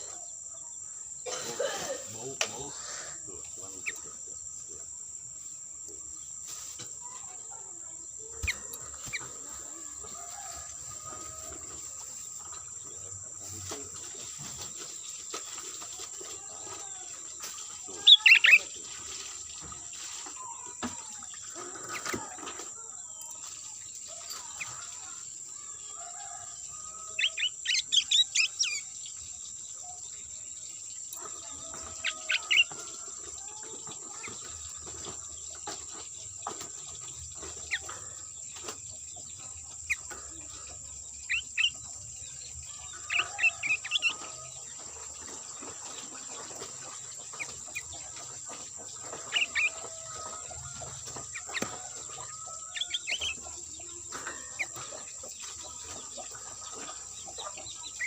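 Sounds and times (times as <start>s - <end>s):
bird chirping: 17.8s - 18.7s, 27.1s - 32.8s, 33.6s - 58.0s.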